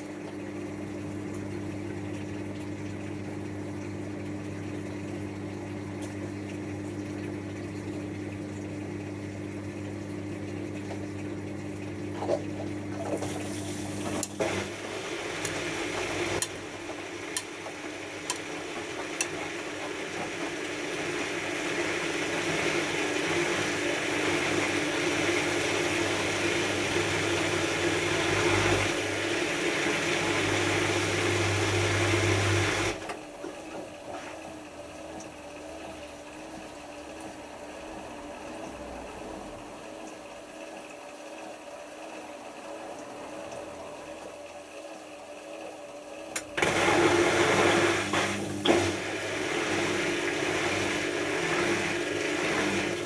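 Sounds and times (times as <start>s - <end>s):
washing machine hum: 0.0s - 53.0s
water rushing into washing machine: 0.0s - 53.0s.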